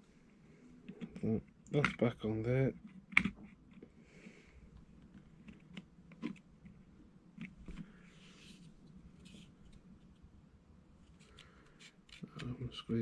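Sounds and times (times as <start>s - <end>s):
soft rubbing: 2.8s - 12.3s.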